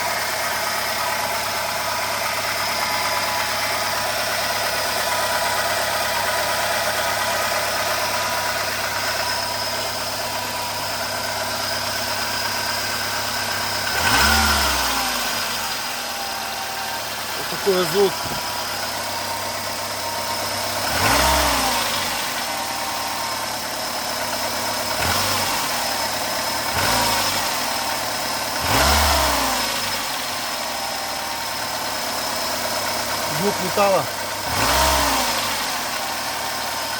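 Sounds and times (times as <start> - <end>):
car engine idling and revving: 0.0 - 36.9.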